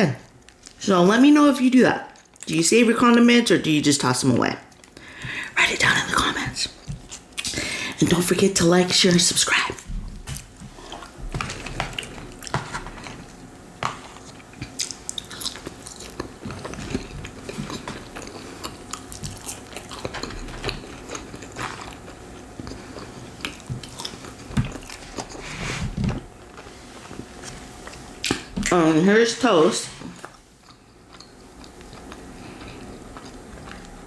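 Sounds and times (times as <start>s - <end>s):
person chewing food: 10.1s - 28.6s, 30.1s - 34.0s
food crunches: 10.3s - 25.4s.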